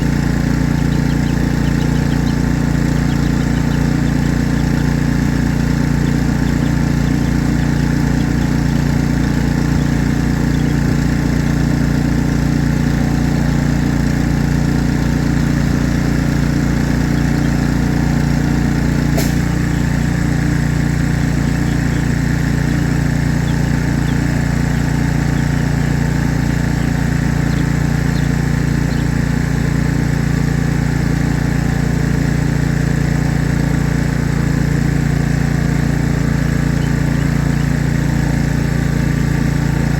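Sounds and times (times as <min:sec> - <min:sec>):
engine idling: 0:00.0 - 0:39.9
sharp click: 0:19.1 - 0:19.6.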